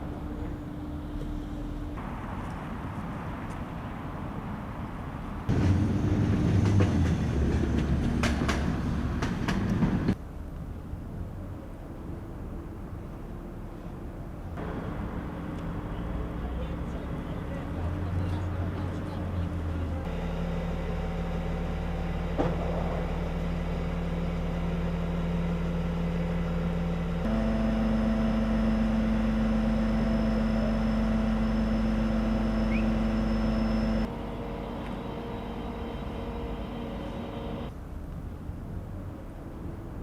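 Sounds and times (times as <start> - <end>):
motor vehicle engine running: 14.6 - 37.8.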